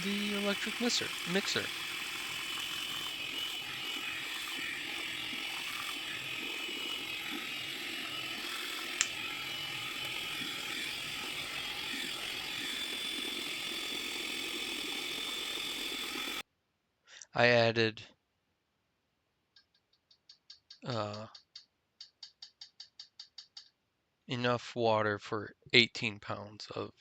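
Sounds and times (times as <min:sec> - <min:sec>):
electric hand mixer running: 0:00.0 - 0:16.4.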